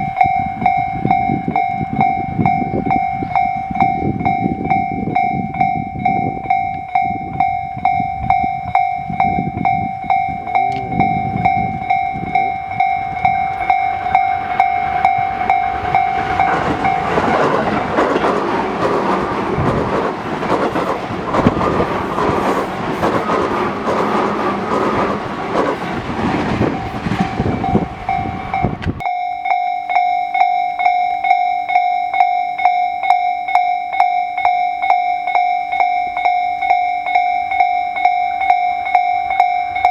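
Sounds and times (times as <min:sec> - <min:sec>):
level-crossing alarm two-note tone: 0:00.0 - 0:17.4, 0:26.6 - 0:39.9
train wheels clacking over rail joints: 0:08.2 - 0:29.0.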